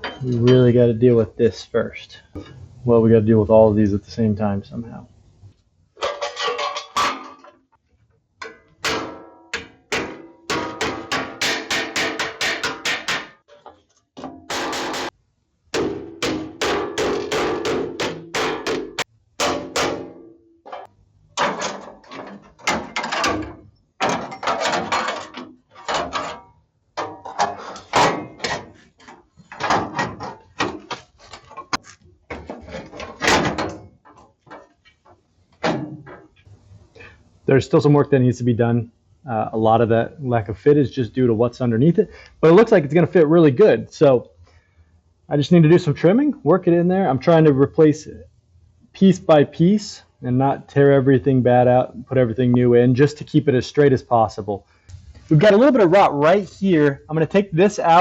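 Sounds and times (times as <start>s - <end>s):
hammer striking sheet metal: 8.8s - 13.4s, 15.8s - 20.3s.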